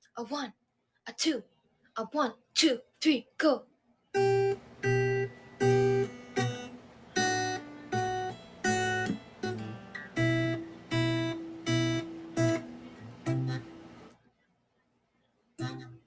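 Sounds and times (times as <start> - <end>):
acoustic guitar strumming: 4.2 - 14.1, 15.6 - 16.0.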